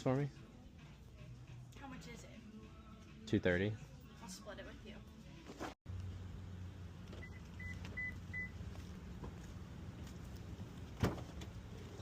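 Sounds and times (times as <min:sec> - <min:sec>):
low store hum: 0:05.1 - 0:12.0.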